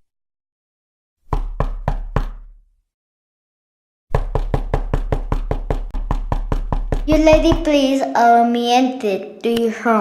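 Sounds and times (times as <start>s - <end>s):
knocking on a door: 1.3s - 2.5s, 4.1s - 7.8s.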